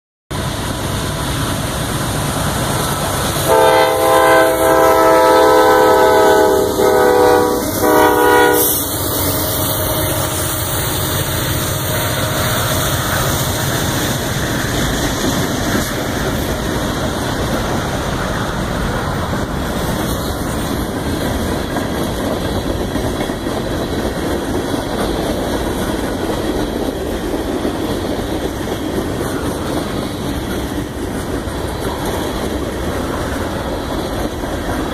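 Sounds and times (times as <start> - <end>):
train rumble: 0.3 - 34.9
locomotive air horn chord: 3.4 - 13.4.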